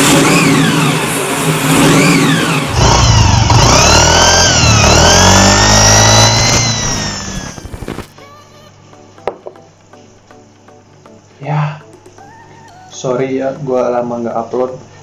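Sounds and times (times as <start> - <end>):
scooter engine revving: 0.0 - 8.1.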